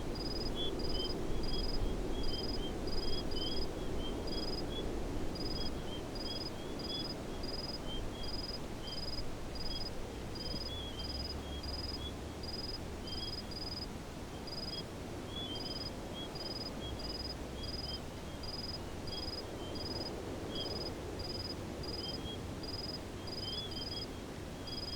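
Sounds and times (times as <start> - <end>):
low wind-like rumble: 0.0 - 15.4.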